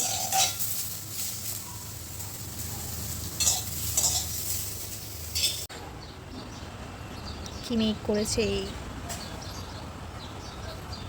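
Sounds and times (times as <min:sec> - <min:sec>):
spatula scraping a pan: 0:00.0 - 0:01.6, 0:02.9 - 0:05.7
vegetable slices sizzling in oil: 0:00.0 - 0:05.7.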